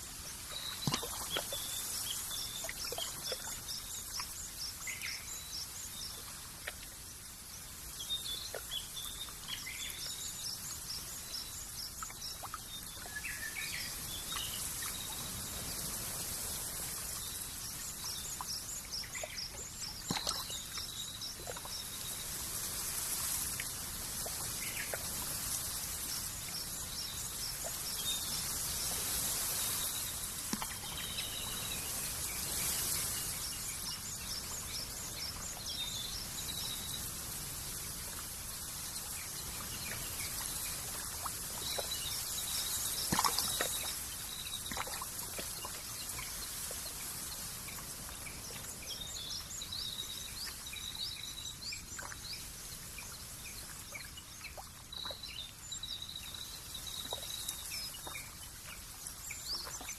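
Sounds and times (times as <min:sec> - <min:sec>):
steady soft hiss: 0:00.0 - 0:59.9
small birds chirping: 0:00.3 - 0:07.3.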